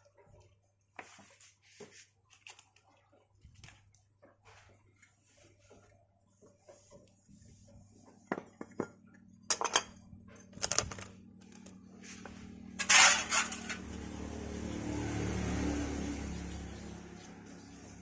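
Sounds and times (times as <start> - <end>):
metal tools clinking: 12.8 - 13.8
metallic rattle: 12.8 - 14.0.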